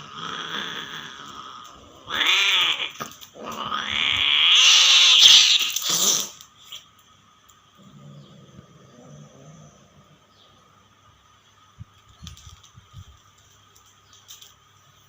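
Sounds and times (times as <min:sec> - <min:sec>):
cat yowling: 0:02.0 - 0:06.3.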